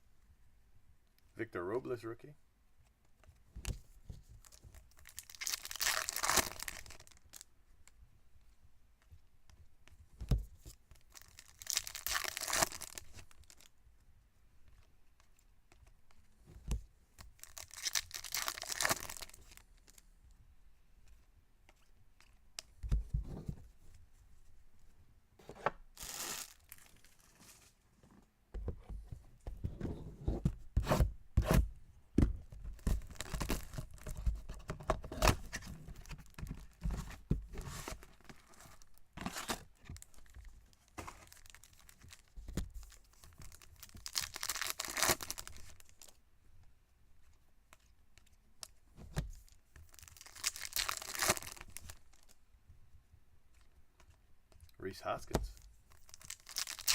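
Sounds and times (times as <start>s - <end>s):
wrappers tearing: 5.0s - 7.2s, 11.2s - 13.6s, 17.4s - 19.4s, 26.0s - 27.3s, 43.5s - 45.8s, 49.9s - 52.2s, 56.0s - 56.9s.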